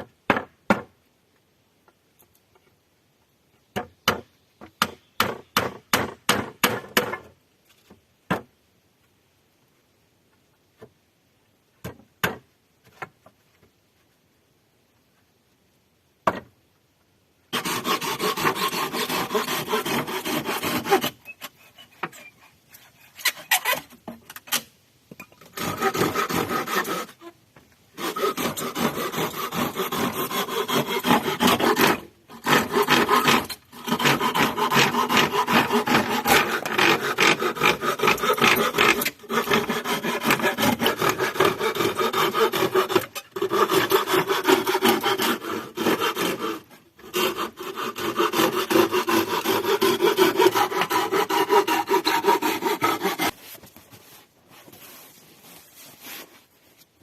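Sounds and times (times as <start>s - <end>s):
abrasive scraping on wood: 28.0s - 56.5s.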